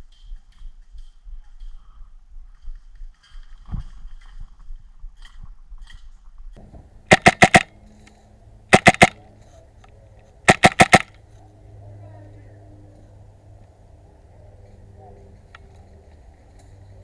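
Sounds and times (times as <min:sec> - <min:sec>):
airsoft rifle rapid shots: 0:06.6 - 0:07.7, 0:08.7 - 0:09.2, 0:10.5 - 0:11.1.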